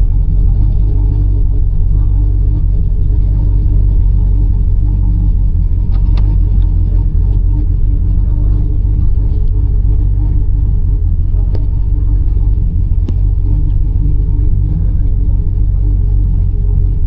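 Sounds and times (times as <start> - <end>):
car engine rumble: 0.0 - 17.0
road noise: 0.0 - 17.0.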